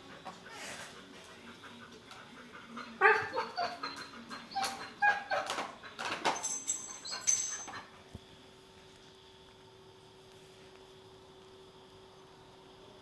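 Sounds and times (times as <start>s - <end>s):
dog barking and whining: 2.8s - 5.8s.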